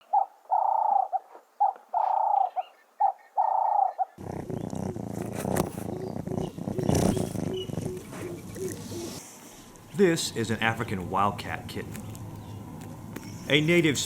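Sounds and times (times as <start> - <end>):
bird cooing: 0.0 - 9.2
faint bird notes: 0.0 - 9.2
rough rumbling: 4.2 - 9.2.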